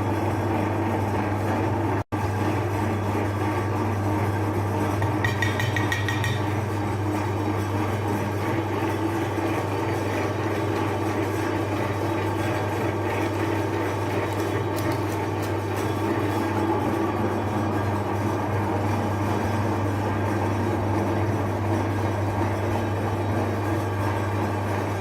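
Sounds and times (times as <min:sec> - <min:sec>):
meat grinder motor humming: 0:00.0 - 0:25.0.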